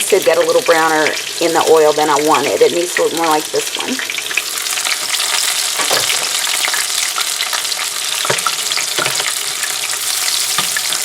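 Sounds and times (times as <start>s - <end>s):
chicken frying in hot oil: 0.0s - 11.0s.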